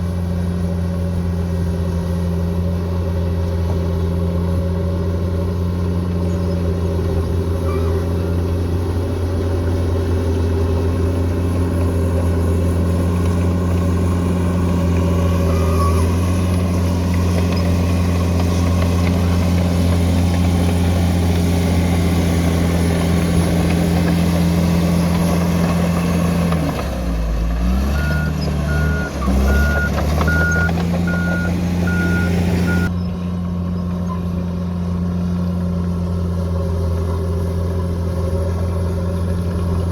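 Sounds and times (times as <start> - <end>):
bulldozer diesel engine running: 0.0 - 39.9
reversing alarm beeping: 28.0 - 32.9.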